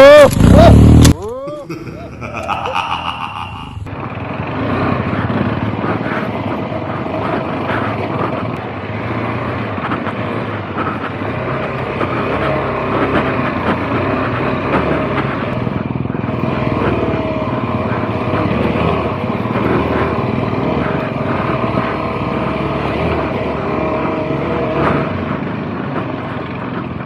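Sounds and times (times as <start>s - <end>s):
motorcycle engine revving: 0.3s - 1.2s.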